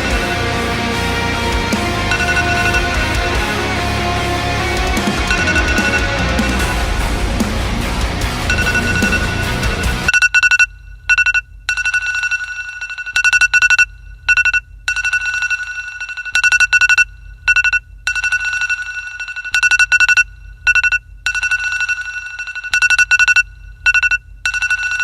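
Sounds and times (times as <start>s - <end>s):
loud music: 0.0s - 10.1s
low hum: 0.0s - 10.1s
high-pitched electronic tone: 0.0s - 11.4s.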